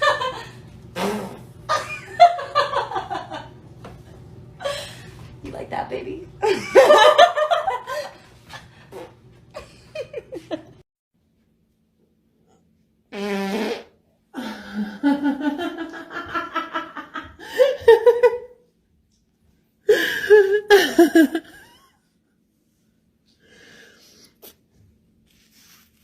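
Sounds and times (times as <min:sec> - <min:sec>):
person farting: 0:00.9 - 0:01.6, 0:08.9 - 0:09.2, 0:13.1 - 0:14.0.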